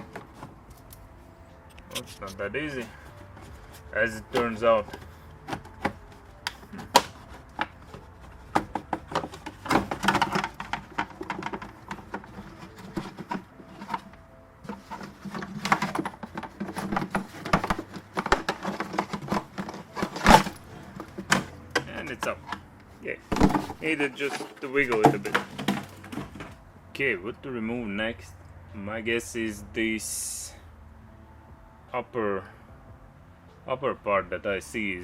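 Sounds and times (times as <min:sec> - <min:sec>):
plastic panel clicks and rattles: 0:08.5 - 0:14.0.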